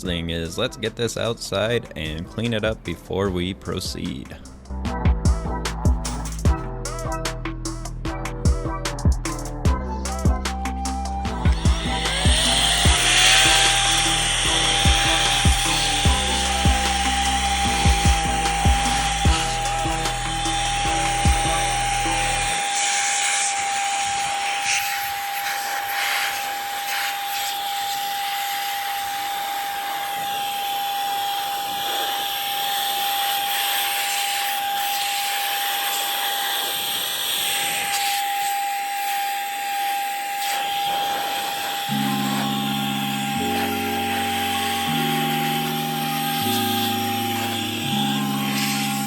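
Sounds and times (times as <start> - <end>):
background music: 0.0 - 22.7, 41.9 - 49.0
rushing air: 8.9 - 27.5
electric air tool whining: 8.9 - 49.0.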